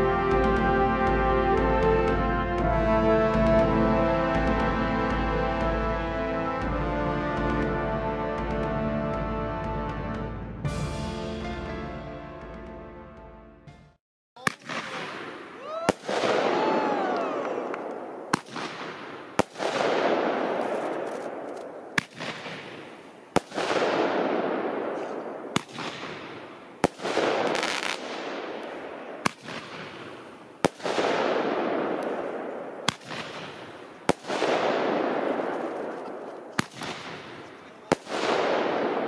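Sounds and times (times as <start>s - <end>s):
firework bangs: 14.4s - 39.0s
firework shell rushing burst: 18.3s - 39.0s.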